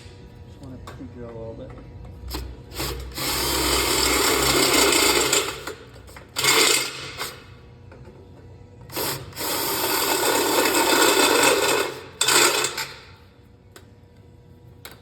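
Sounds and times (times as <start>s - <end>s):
power drill boring into metal: 2.8s - 5.7s, 6.4s - 7.2s, 9.0s - 13.0s.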